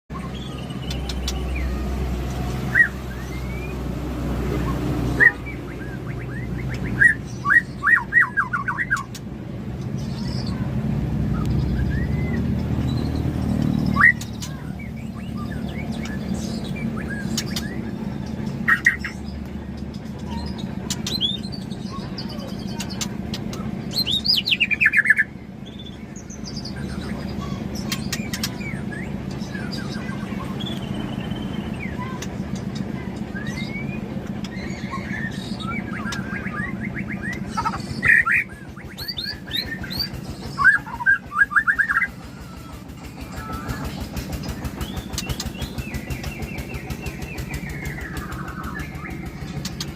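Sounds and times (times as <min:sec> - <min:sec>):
songbird singing whistles and trills: 0:00.1 - 0:04.0, 0:04.6 - 0:09.2, 0:11.2 - 0:49.9.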